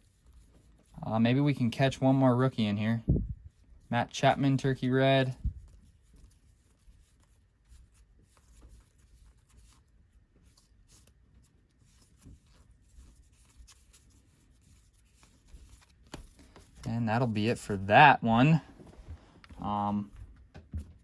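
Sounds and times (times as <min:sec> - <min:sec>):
trading cards rustling: 0:04.4 - 0:20.1.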